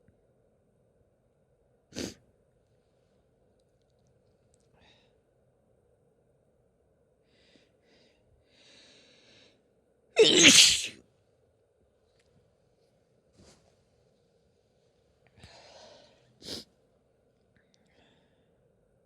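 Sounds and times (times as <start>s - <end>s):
woman sneezing loudly: 10.2s - 11.0s
woman breathing faintly: 15.3s - 16.5s.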